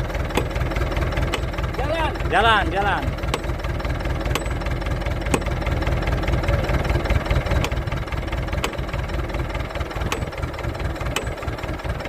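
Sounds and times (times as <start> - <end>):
bulldozer diesel engine rumbling: 0.0 - 12.0
sharp metallic knocks: 0.2 - 1.8, 3.1 - 5.8, 7.5 - 7.8, 8.5 - 9.0, 9.8 - 11.7.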